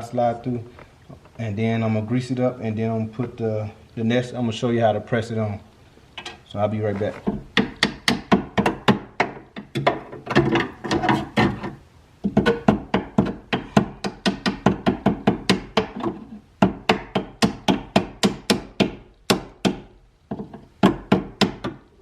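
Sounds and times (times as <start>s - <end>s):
fast hammer-like knocking: 7.3s - 11.6s, 12.2s - 21.8s.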